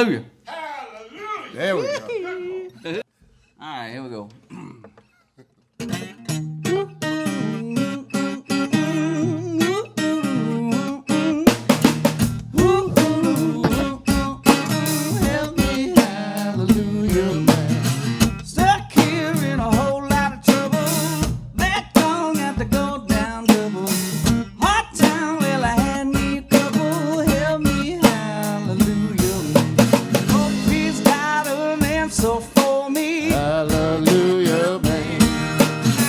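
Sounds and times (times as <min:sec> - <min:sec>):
drum kit steady beat: 0:11.5 - 0:36.0
electric guitar playing: 0:28.5 - 0:32.6, 0:33.3 - 0:36.0.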